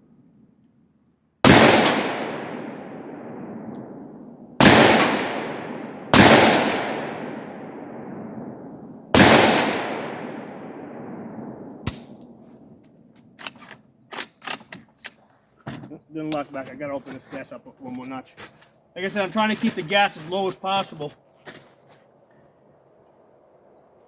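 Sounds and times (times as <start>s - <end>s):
rifle shots with echo: 1.4s - 12.4s.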